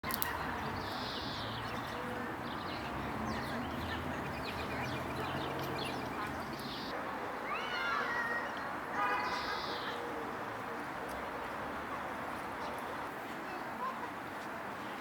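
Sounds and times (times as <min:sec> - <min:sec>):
small birds chirping: 0:00.0 - 0:07.0
traffic hum: 0:00.0 - 0:15.0.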